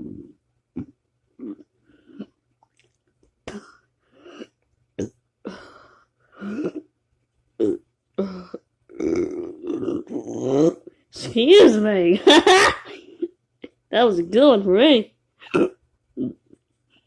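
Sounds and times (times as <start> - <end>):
throaty burps: 0.0 - 2.4, 3.5 - 5.2, 7.6 - 10.8, 15.4 - 16.6.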